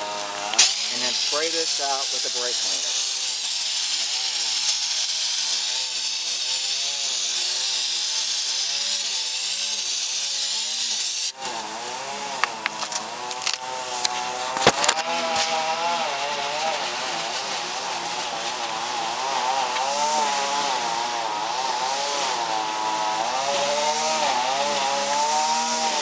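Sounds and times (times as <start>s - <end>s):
small engine running: 0.0s - 26.0s
aerosol spraying hiss: 0.2s - 11.3s.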